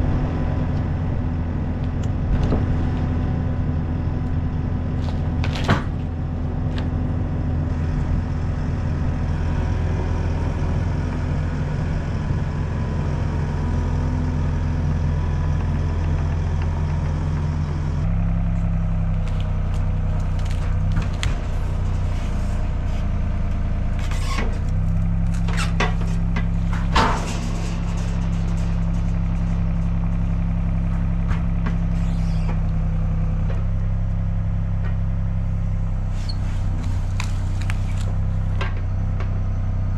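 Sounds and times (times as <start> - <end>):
engine running steadily: 0.0 - 39.9
sharp clanks and knocks: 24.0 - 32.7.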